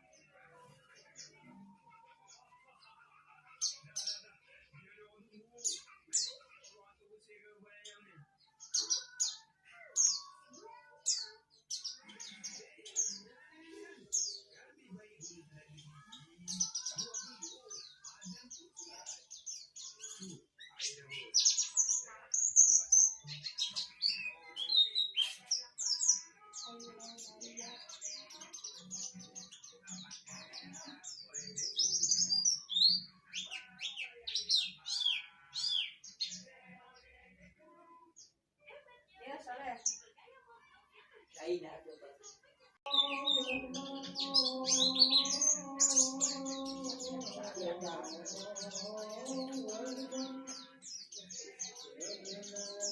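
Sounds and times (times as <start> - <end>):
bird twittering song: 7.7 - 37.6, 41.4 - 52.9
bird chirping high: 42.9 - 52.9.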